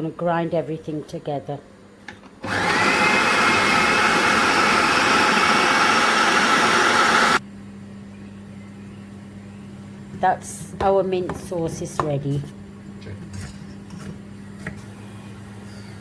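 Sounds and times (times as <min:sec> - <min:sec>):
electric blender running: 0:02.4 - 0:07.4.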